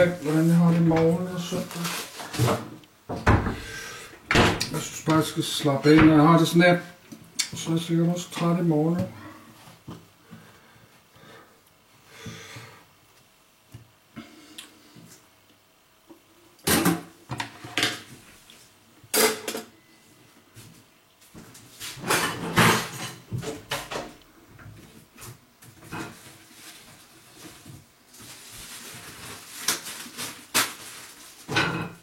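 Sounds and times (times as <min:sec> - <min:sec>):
rustling and clattering: 0:20.6 - 0:32.0.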